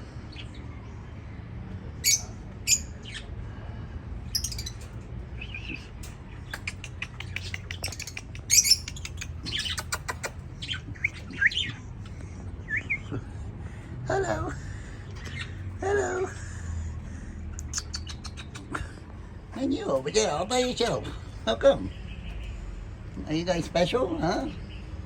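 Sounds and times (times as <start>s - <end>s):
birds chirping and squawking: 0.0s - 1.2s, 1.9s - 25.0s.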